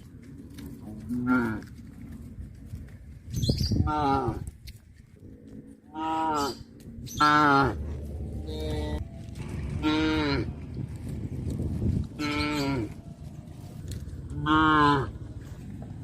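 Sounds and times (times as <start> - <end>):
cattle mooing: 0.8 - 1.7, 5.3 - 10.7, 12.1 - 13.0, 14.3 - 15.3.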